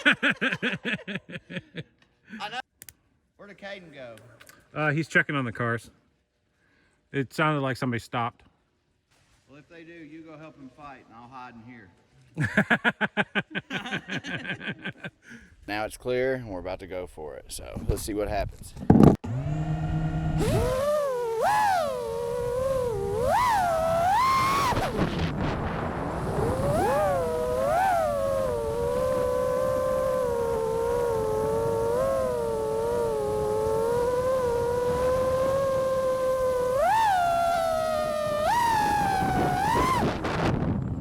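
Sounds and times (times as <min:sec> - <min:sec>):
quadcopter motors whining: 0:19.2 - 0:40.9.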